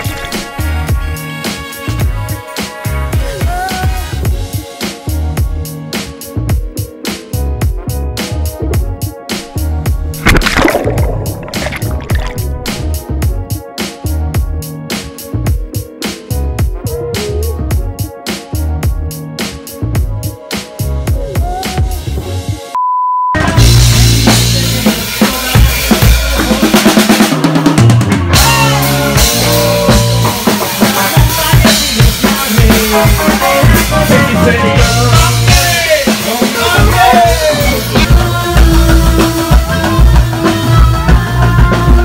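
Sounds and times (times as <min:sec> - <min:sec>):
background music: 0:00.0 - 0:22.8, 0:23.4 - 0:42.0
drum kit playing a steady beat: 0:23.4 - 0:42.0.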